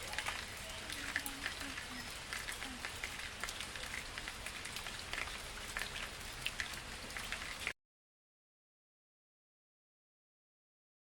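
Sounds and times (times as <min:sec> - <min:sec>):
rain on leaves: 0:00.0 - 0:07.8.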